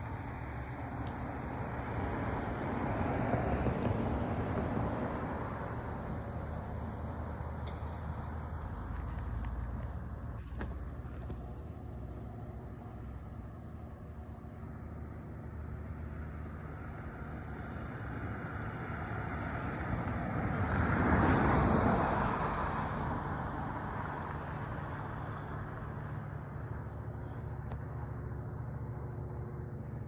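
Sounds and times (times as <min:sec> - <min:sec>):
airplane passing overhead: 0:12.0 - 0:30.0.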